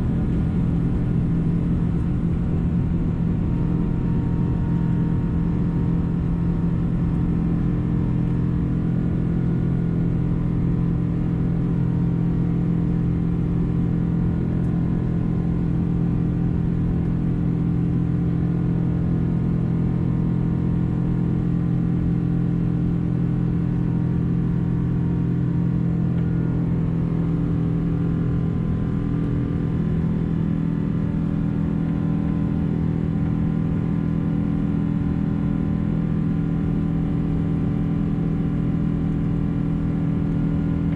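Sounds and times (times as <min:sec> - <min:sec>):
jet engine cabin drone: 0:00.0 - 0:40.9.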